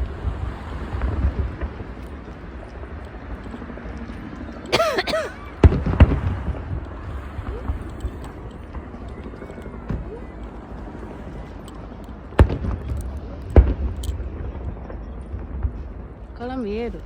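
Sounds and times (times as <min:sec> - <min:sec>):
fireworks sharp bangs: 0:00.0 - 0:16.3
fireworks crackling: 0:00.0 - 0:17.0
low rumble: 0:05.5 - 0:17.0.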